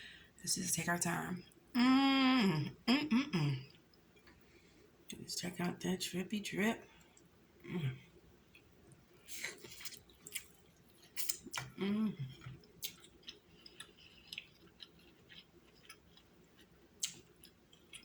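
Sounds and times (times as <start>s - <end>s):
person humming: 1.8s - 3.7s, 11.8s - 12.4s
chewing and eating sounds: 8.5s - 18.0s.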